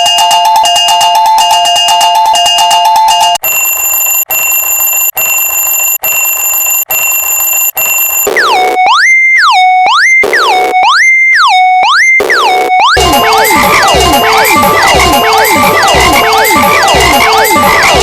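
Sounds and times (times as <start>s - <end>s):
two-tone crossing bell ringing: 0.0s - 6.2s, 13.0s - 18.0s
high steady alarm tone: 0.0s - 18.0s.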